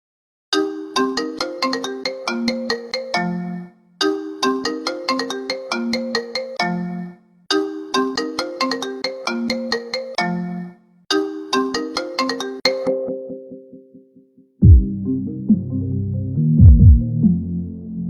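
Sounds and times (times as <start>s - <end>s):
marimba phone ringtone: 0.6s - 13.1s.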